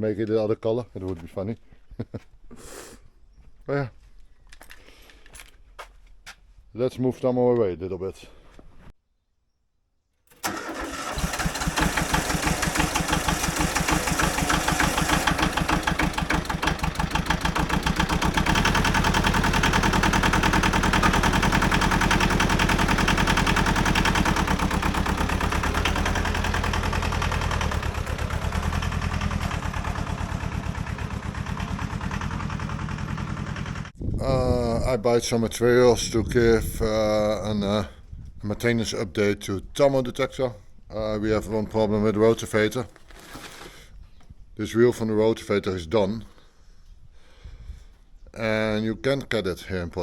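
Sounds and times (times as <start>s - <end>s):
diesel tractor engine chugging: 10.4s - 34.0s.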